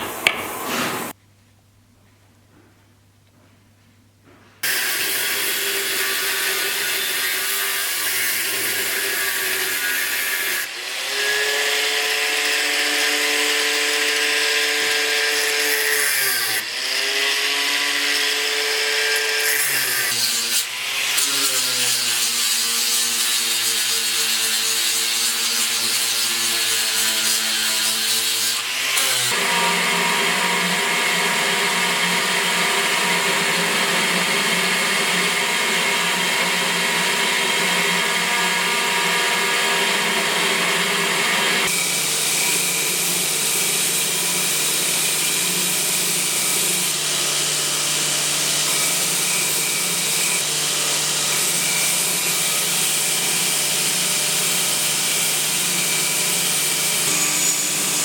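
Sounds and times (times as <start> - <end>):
electric grinder grinding: 4.6 - 58.0.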